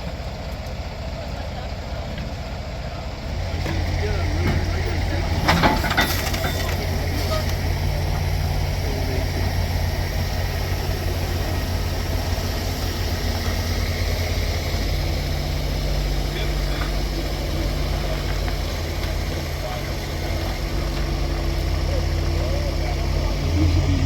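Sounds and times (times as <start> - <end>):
diesel truck engine idling: 0.0 - 24.0.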